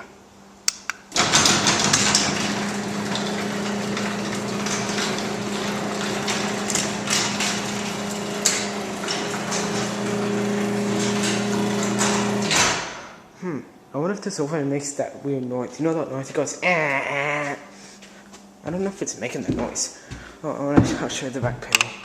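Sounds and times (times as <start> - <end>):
door rollers clattering: 1.1 - 13.2
garage door opener humming: 1.1 - 13.3.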